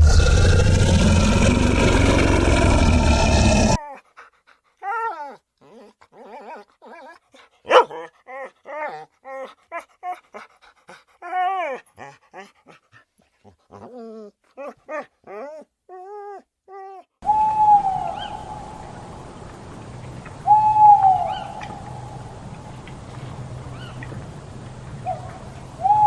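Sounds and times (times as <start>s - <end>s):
dog whimpering: 4.8s - 10.4s, 11.2s - 12.7s, 13.4s - 17.1s.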